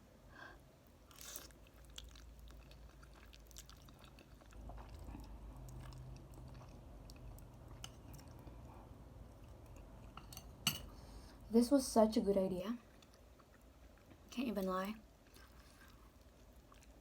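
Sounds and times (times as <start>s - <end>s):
chewing noodles: 1.1s - 10.2s, 12.8s - 14.3s, 15.1s - 17.0s.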